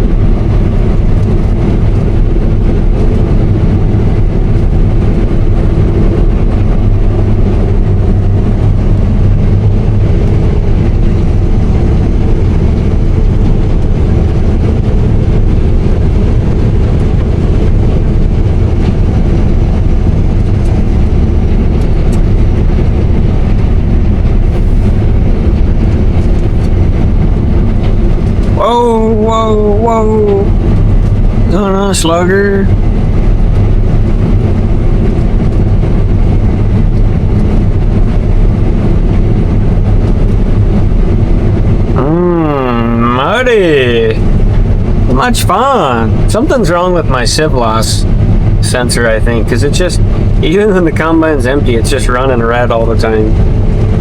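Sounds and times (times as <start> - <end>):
combine harvester engine drone: 0.0 - 54.0.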